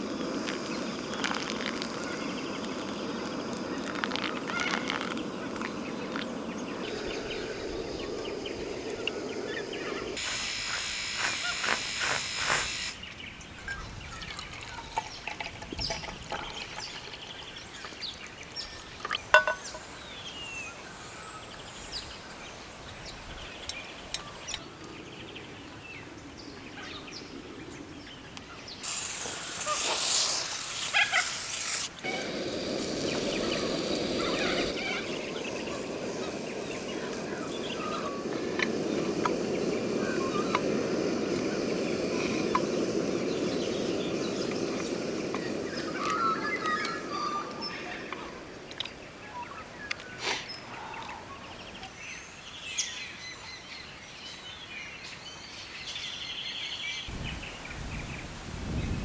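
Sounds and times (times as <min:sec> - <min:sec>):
loud hiss: 0:00.0 - 0:13.1, 0:28.8 - 0:48.1
birds chirping: 0:00.1 - 0:22.1, 0:28.5 - 0:53.2.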